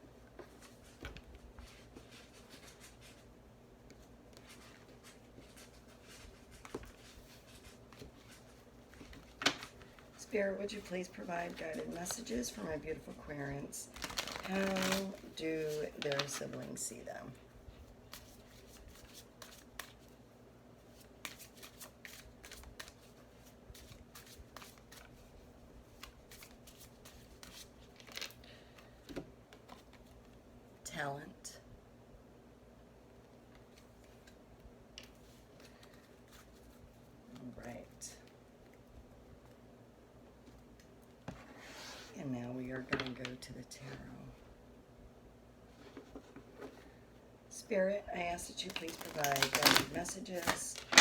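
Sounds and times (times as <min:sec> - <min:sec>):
cards being shuffled: 0:18.1 - 0:20.1, 0:20.9 - 0:25.2, 0:25.9 - 0:28.4, 0:48.5 - 0:51.0.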